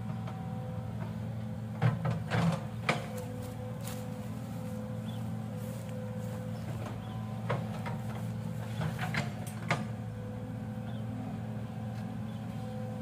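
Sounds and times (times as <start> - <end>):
excavator diesel engine running: 0.0 - 13.0
metallic clanks and creaks: 6.2 - 10.0.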